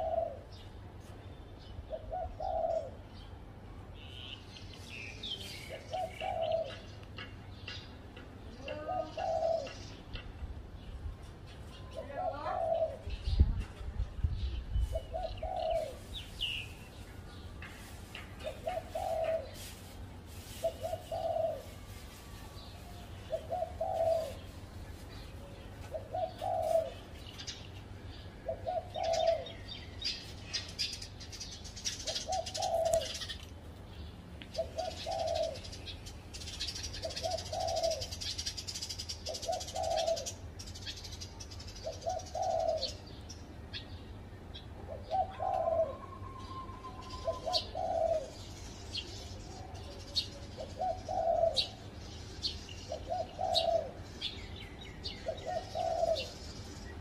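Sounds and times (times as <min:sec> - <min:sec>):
dove cooing: 0:00.0 - 0:00.6, 0:01.9 - 0:03.1, 0:05.5 - 0:07.3, 0:08.6 - 0:10.0, 0:12.0 - 0:13.4, 0:14.8 - 0:16.3, 0:18.4 - 0:22.0, 0:22.6 - 0:27.2, 0:28.4 - 0:30.2, 0:31.8 - 0:33.4, 0:34.6 - 0:35.8, 0:36.4 - 0:40.4, 0:41.0 - 0:43.2, 0:44.8 - 0:48.6, 0:49.8 - 0:51.9, 0:52.8 - 0:54.1, 0:55.0 - 0:56.5
small birds twittering: 0:00.0 - 0:57.0.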